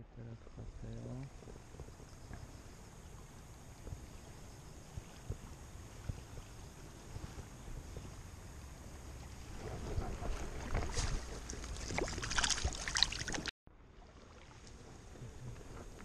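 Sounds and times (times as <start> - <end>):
water splashing and sloshing: 0.5 - 16.0.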